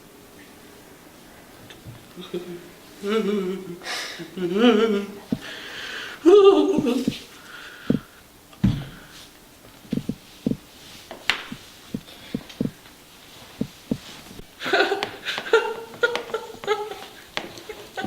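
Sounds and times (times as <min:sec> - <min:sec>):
thumps and knocks: 0:06.8 - 0:07.3, 0:07.9 - 0:09.0, 0:09.9 - 0:10.6, 0:11.3 - 0:12.8, 0:13.6 - 0:14.4.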